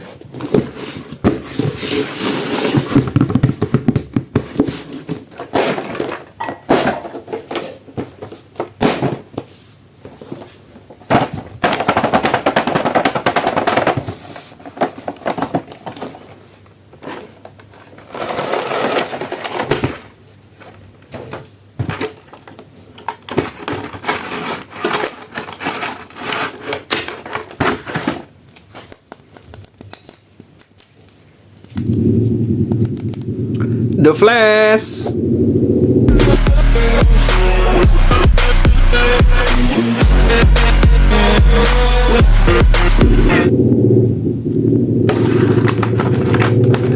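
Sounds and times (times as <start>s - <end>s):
plastic packaging crinkling: 45.1s - 46.9s.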